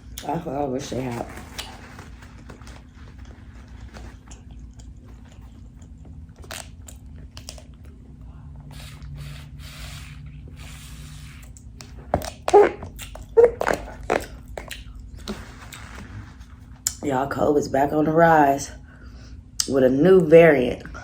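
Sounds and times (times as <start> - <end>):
person chewing food: 1.4 - 17.0.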